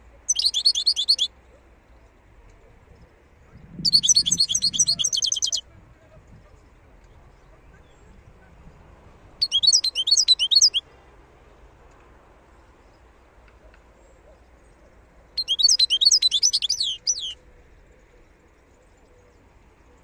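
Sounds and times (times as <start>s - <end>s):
goldfinch twittering: 0.3s - 1.3s, 3.8s - 5.6s, 9.4s - 10.8s, 15.4s - 17.4s.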